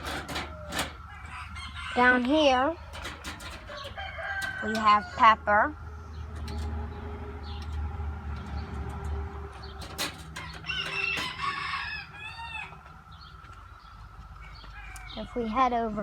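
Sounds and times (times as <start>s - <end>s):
rooster crowing: 0.0s - 5.6s, 10.3s - 13.0s, 14.4s - 15.6s.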